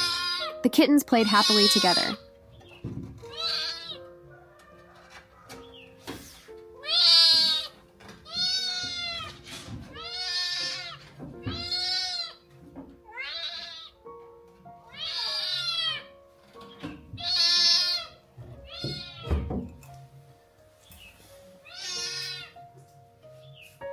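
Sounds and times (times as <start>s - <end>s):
kittens meowing: 0.0s - 0.6s, 1.2s - 2.2s, 3.2s - 4.2s, 6.8s - 12.4s, 13.1s - 14.1s, 14.8s - 16.2s, 16.8s - 19.5s, 21.6s - 22.6s
soft background music: 0.0s - 23.9s.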